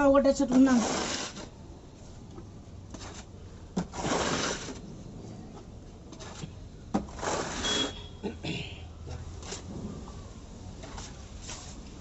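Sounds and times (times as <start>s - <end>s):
putty blade scraping a wall: 0.5s - 1.6s, 2.9s - 4.8s, 7.0s - 8.0s.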